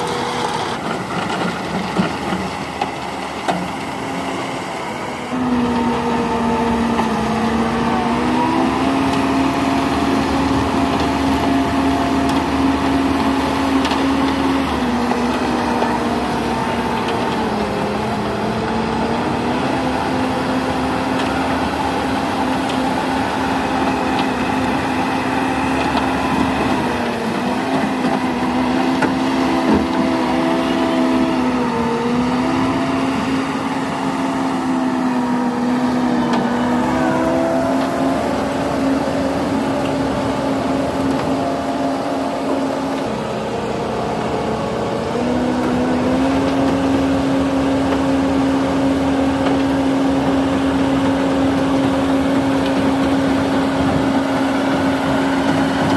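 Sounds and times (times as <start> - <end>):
heavy vehicle engine running: 0.0 - 55.9
machinery whine: 0.0 - 55.9.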